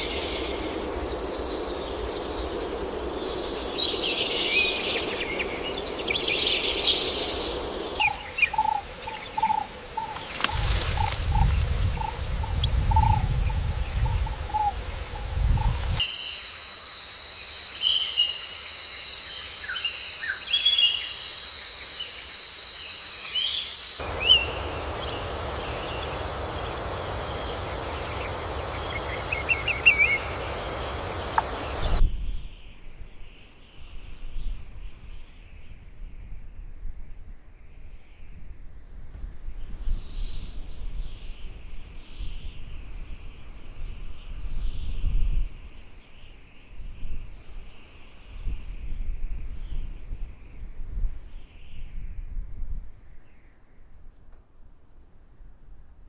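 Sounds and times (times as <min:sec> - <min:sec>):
bird chirps: 0:00.0 - 0:32.0
high insect buzz: 0:00.0 - 0:32.0
insect drone: 0:00.0 - 0:32.7.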